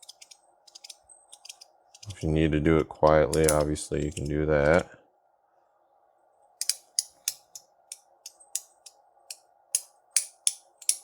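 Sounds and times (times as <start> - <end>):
sharp light clicks of coin: 3.3 - 4.3, 9.8 - 11.0.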